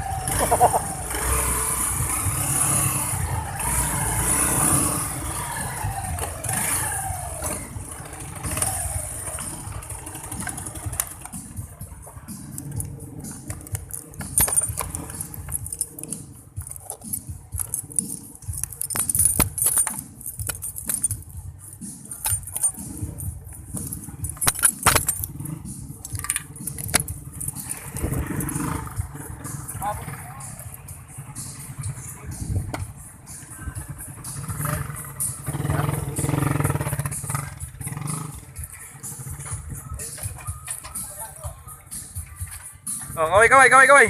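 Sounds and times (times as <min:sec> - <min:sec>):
engine and road rumble: 0:00.0 - 0:44.0
sharp clicks and rattles: 0:05.9 - 0:33.1.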